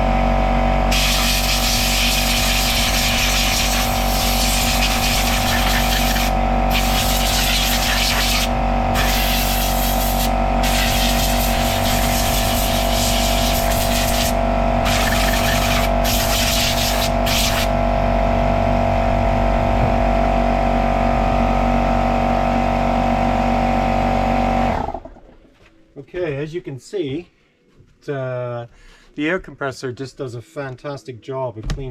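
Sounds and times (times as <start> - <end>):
air compressor motor running: 0.0 - 25.3
air nozzle hissing blasts: 0.9 - 17.7.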